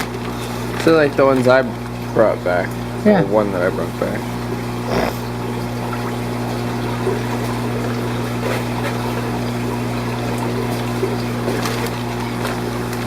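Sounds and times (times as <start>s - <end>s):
aquarium pumps humming: 0.0s - 13.0s
water trickling: 0.1s - 13.0s.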